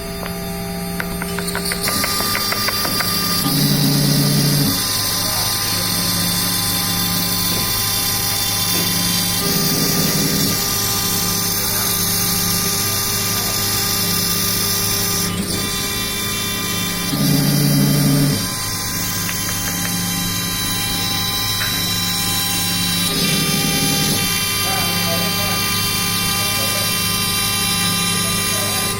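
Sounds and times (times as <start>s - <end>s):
low machine hum: 0.0s - 28.9s
router spindle whine: 0.0s - 28.9s.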